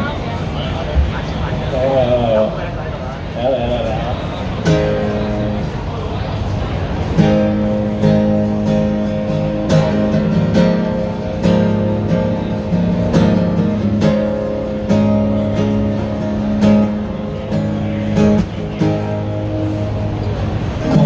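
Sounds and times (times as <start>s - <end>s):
acoustic guitar strumming: 3.6s - 21.0s.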